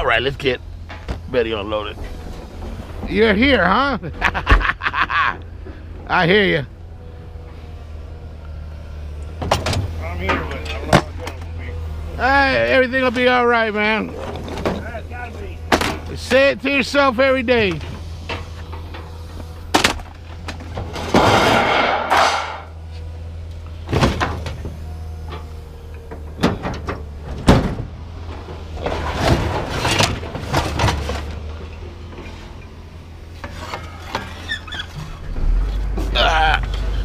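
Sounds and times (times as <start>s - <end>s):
scrap metal knocks and clanks: 17.7s - 22.8s, 25.3s - 32.4s
slam: 21.0s - 22.7s
steady low hum: 34.9s - 37.0s.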